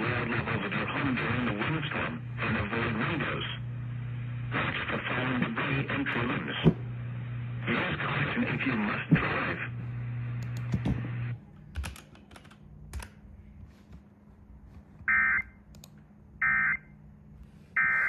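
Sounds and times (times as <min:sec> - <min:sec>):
radio static with low hum: 0:00.0 - 0:11.4, 0:17.7 - 0:18.0
sharp clicks: 0:15.7 - 0:16.0.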